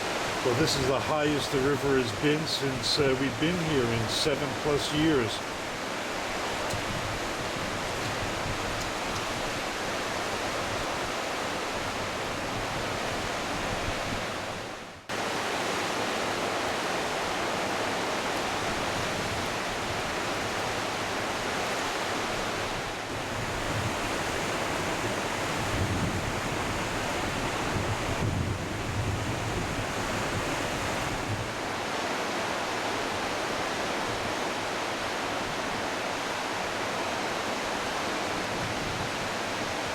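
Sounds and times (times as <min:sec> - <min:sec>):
river rushing: 0:00.0 - 0:39.9
wind rumble on microphone: 0:06.5 - 0:14.8, 0:22.4 - 0:31.6, 0:38.3 - 0:39.8.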